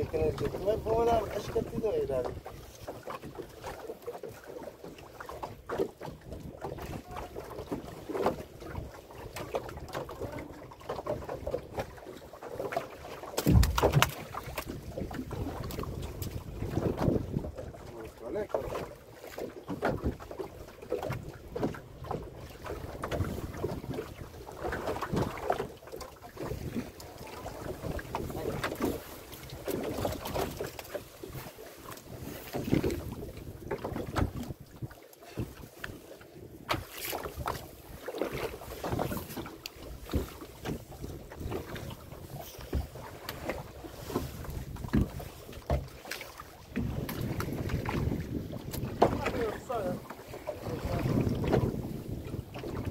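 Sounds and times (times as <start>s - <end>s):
knocks and thuds on boat: 0.0s - 52.9s
water sloshing against hull: 0.0s - 52.9s
wind buffeting microphone: 13.4s - 18.3s, 32.1s - 35.6s, 46.7s - 52.9s.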